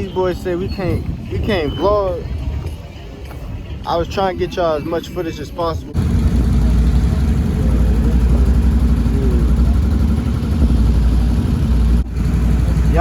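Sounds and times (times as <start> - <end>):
atv engine running: 6.0 - 13.0.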